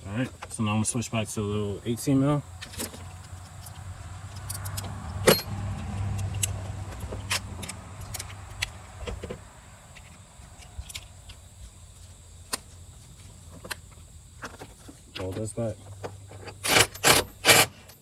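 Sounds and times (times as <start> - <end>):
ratchet and socket clinking: 2.6 - 8.8.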